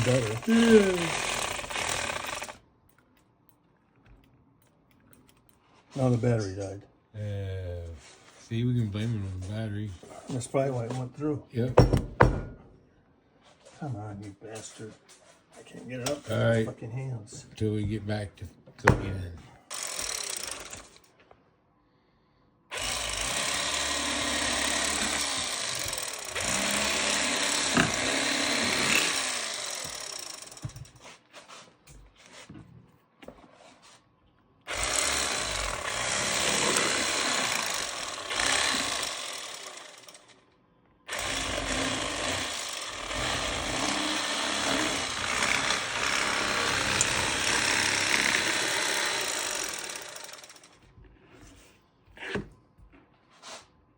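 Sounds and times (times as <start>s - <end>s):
electric fillet knife buzzing: 0.0s - 2.6s, 22.7s - 30.8s, 34.7s - 40.3s, 41.1s - 50.7s.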